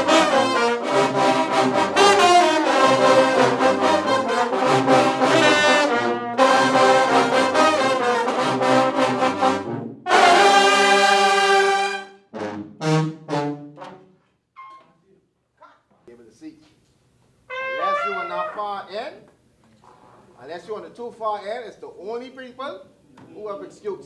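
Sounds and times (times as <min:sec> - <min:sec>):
brass section playing: 0:00.0 - 0:14.7, 0:17.5 - 0:19.0.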